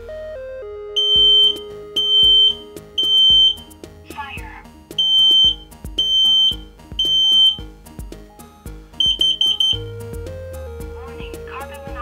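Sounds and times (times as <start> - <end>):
background music: 0.0 - 12.0
smoke alarm beeping: 1.0 - 3.8, 5.0 - 7.7, 9.0 - 10.0.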